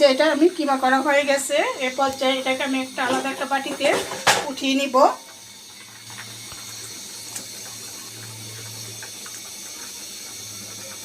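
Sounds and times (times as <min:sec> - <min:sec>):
steady hissing: 0:00.0 - 0:11.0.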